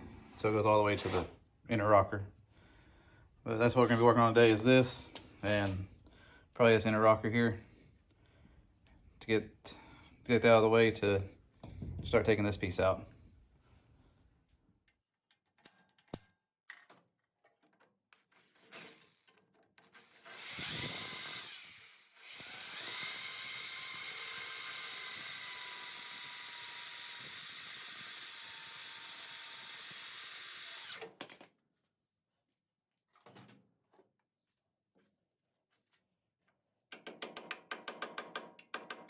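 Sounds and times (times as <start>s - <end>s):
power drill whining: 19.9s - 31.2s.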